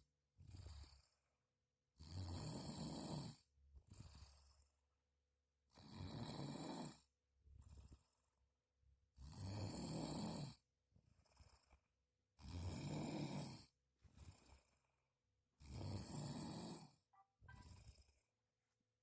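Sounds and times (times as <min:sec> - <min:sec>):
man snoring heavily: 0:00.4 - 0:01.1, 0:02.0 - 0:04.7, 0:05.7 - 0:07.1, 0:09.2 - 0:10.6, 0:12.4 - 0:14.8, 0:15.6 - 0:18.2
quiet breaths: 0:00.4 - 0:01.3, 0:02.8 - 0:05.0, 0:05.8 - 0:18.7.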